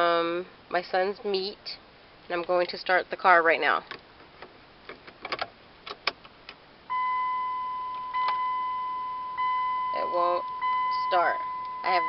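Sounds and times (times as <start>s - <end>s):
electronic dashboard chime: 6.9s - 12.0s.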